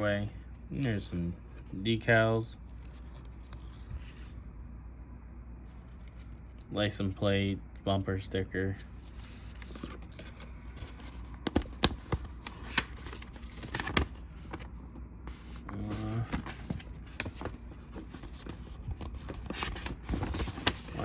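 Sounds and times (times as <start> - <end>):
paper sheet rustling: 8.8 - 21.0.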